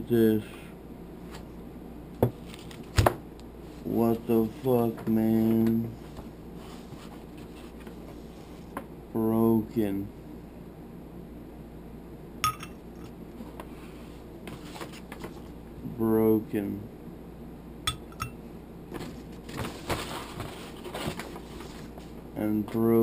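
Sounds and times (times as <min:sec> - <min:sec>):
rustling and scraping: 0:02.3 - 0:03.0, 0:03.6 - 0:08.8, 0:13.4 - 0:15.6, 0:18.9 - 0:22.2.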